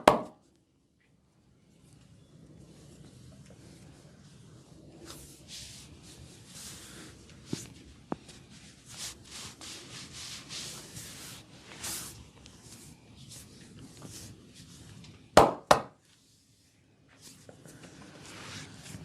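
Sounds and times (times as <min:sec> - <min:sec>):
hands scratching scalp and hair: 0:08.5 - 0:14.9.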